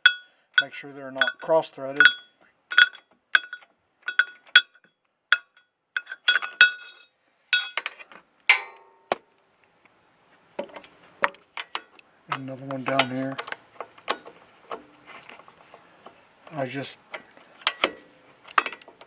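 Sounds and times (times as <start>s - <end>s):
metal tools clinking on bolts: 0.0s - 8.8s, 11.6s - 14.4s, 17.6s - 19.0s.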